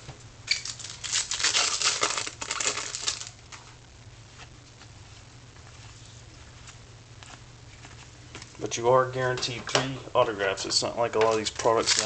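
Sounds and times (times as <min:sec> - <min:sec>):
card pack wrapper crinkling: 0:00.5 - 0:03.6, 0:11.3 - 0:12.0.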